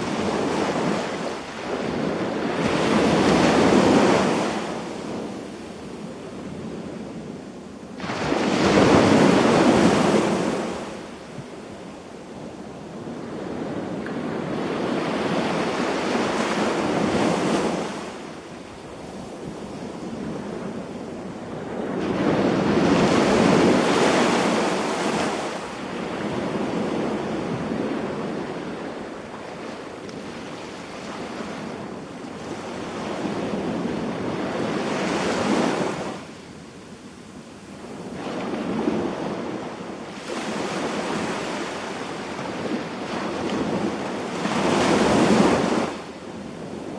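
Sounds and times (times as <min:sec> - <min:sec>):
sea waves breaking on shore: 0:00.0 - 0:07.3, 0:07.9 - 0:46.9.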